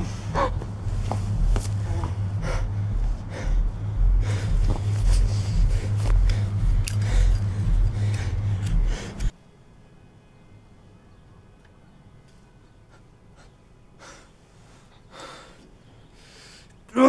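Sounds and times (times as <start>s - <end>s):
person breathing heavily: 0.0s - 9.3s, 12.9s - 16.8s
faint steady hum: 0.0s - 17.0s.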